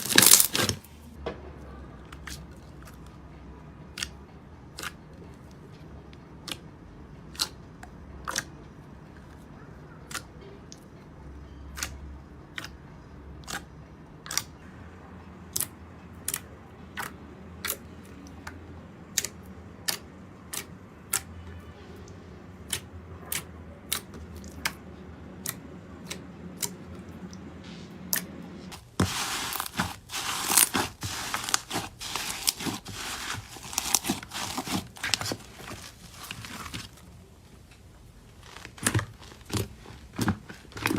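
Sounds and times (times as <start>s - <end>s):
slime crackling: 0.0s - 1.0s, 28.7s - 37.4s, 38.4s - 40.9s.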